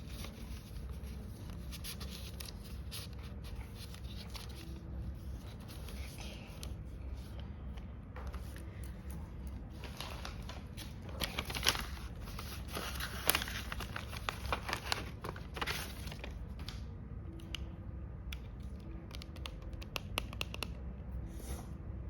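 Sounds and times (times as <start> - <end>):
paper crinkling and rustling: 0.0 - 16.9
sharp clicks and snips: 18.3 - 20.8.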